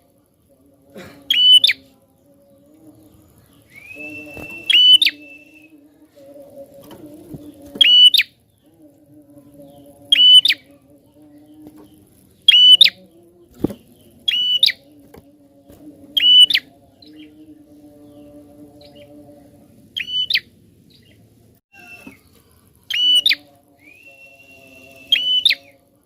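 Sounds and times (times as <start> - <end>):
bird shrill chirping song: 1.3 - 5.8, 7.4 - 8.7, 9.6 - 15.0, 16.0 - 19.2, 19.9 - 25.9.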